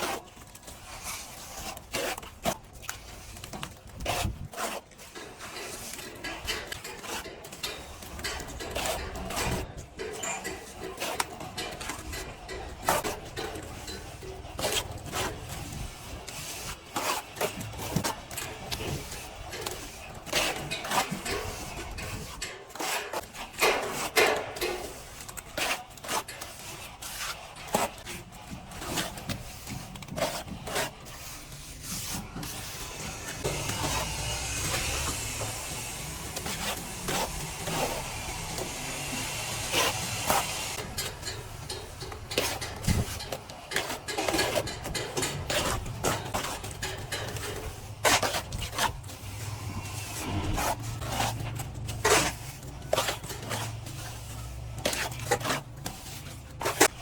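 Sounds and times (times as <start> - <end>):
trowel scraping a wall: 0.0 - 57.0.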